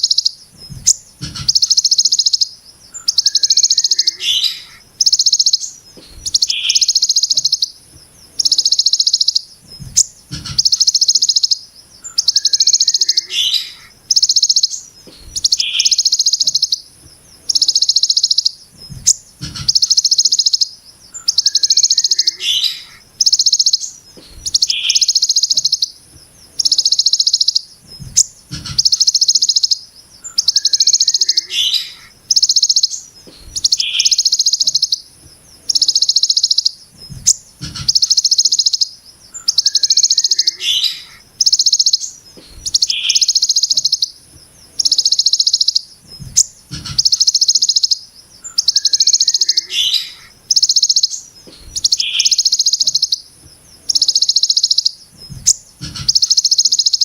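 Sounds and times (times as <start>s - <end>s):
songbird harsh buzzy call: 0.0s - 57.0s
faint low thumps: 0.5s - 1.7s, 9.6s - 10.7s, 18.7s - 19.8s, 27.8s - 28.9s, 36.9s - 38.0s, 46.0s - 47.1s, 55.2s - 56.2s.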